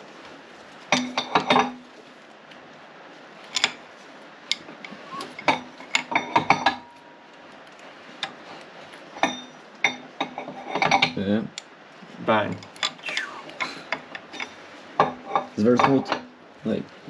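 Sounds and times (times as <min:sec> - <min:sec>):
metal tools clinking on engine parts: 0:00.9 - 0:01.8, 0:12.5 - 0:16.3.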